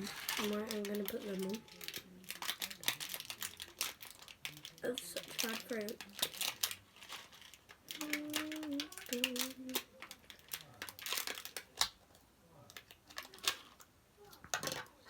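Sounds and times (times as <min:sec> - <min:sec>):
slime crinkling and crackling: 0:00.0 - 0:12.0, 0:12.6 - 0:15.0
person humming: 0:07.9 - 0:09.8.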